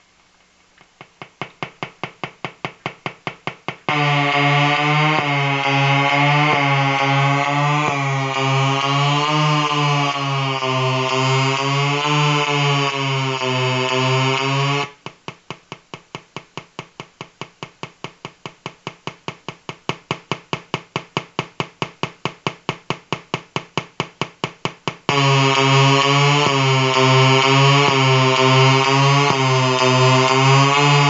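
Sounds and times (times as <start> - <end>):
rapid electrical ticking: 0.8 - 31.0
pulsing electrical buzz: 2.2 - 15.1, 24.8 - 31.0.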